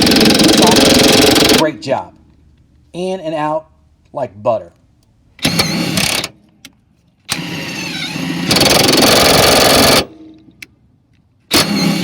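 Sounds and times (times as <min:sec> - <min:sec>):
impact wrench running: 0:00.0 - 0:01.6, 0:07.3 - 0:10.1.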